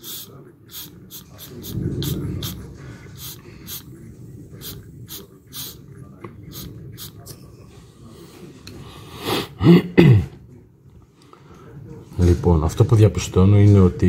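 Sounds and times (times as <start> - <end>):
air puffs hissing through hose: 0.0 - 3.9, 4.6 - 7.3.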